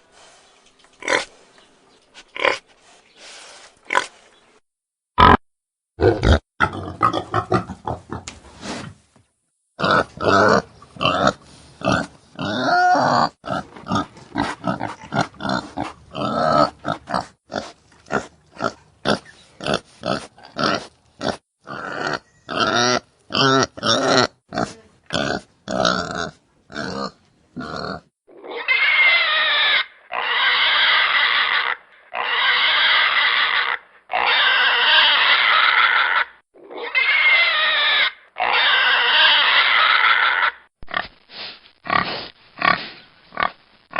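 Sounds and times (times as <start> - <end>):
pigs grunting and squealing: 5.2 - 5.4, 6.0 - 8.3, 9.8 - 41.1.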